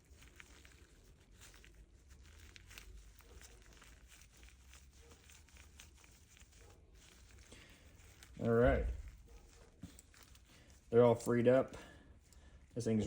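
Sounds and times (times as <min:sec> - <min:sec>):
small clicks and rustling: 0:00.0 - 0:13.0.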